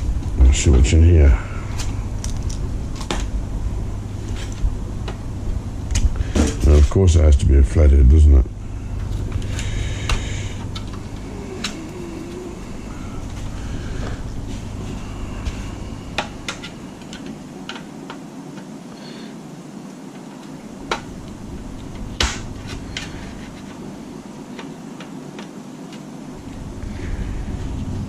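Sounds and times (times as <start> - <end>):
low rumble: 26.4 - 28.0.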